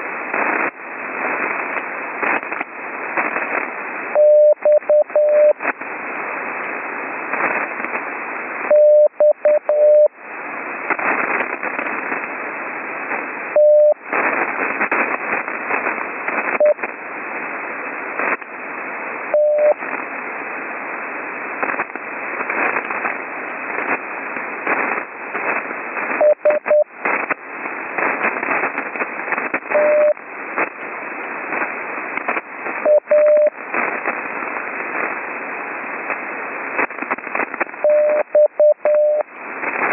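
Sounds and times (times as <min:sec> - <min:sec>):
radio band noise hiss: 0:00.0 - 0:39.9
morse code tone: 0:04.2 - 0:05.6, 0:08.7 - 0:10.1, 0:13.6 - 0:14.0, 0:19.4 - 0:19.8, 0:26.2 - 0:26.9, 0:29.8 - 0:30.2, 0:32.9 - 0:33.5, 0:37.8 - 0:39.2.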